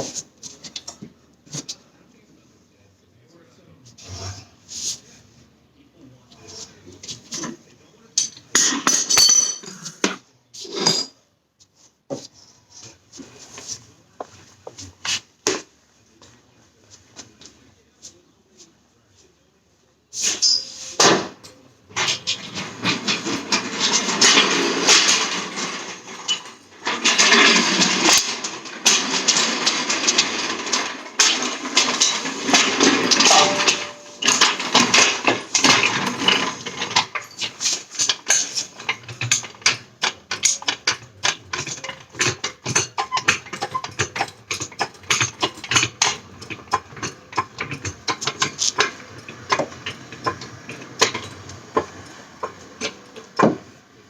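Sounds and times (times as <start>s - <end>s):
hand tools working: 21.9s - 53.8s
rapid clicks and knocks: 22.0s - 53.8s.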